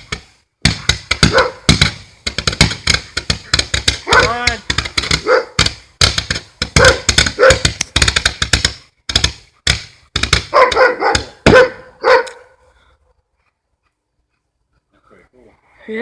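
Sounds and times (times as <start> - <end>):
firework barrage shots: 0.0 - 11.9
dog barking: 1.2 - 1.7, 4.0 - 4.4, 5.2 - 5.6, 6.8 - 7.7, 10.5 - 12.6.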